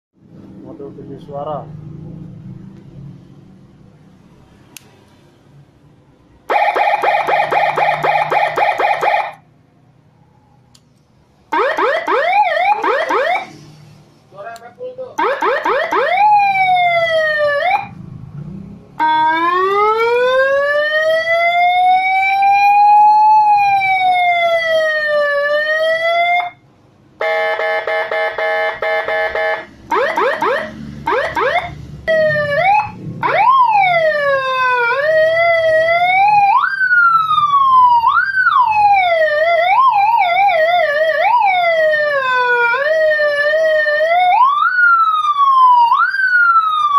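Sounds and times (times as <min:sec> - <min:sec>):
electronic siren wailing and yelping: 0:06.5 - 0:09.4, 0:11.5 - 0:13.6, 0:15.2 - 0:18.0, 0:19.0 - 0:26.6, 0:27.2 - 0:46.9.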